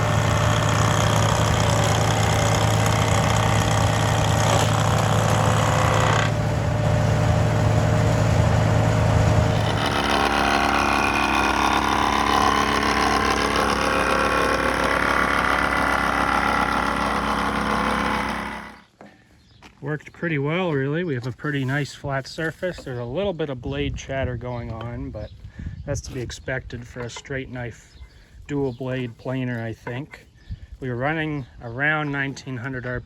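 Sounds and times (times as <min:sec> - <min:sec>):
tractor engine running: 0:00.0 - 0:18.8.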